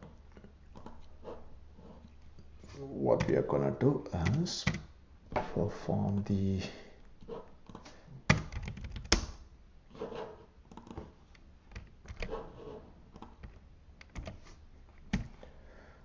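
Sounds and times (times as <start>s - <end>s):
computer keyboard typing: 8.3s - 9.2s, 13.4s - 14.4s.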